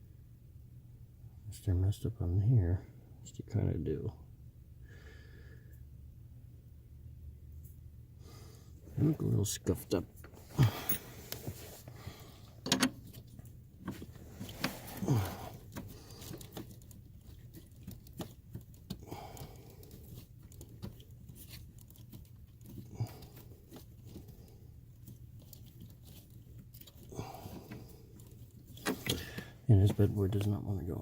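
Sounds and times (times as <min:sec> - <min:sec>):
hands clicking and scraping parts: 0:08.9 - 0:30.8.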